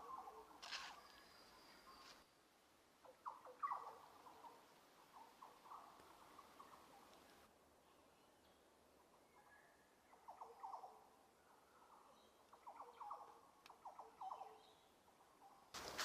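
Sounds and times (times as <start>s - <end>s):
bird chirps: 3.0s - 7.2s, 9.2s - 15.6s.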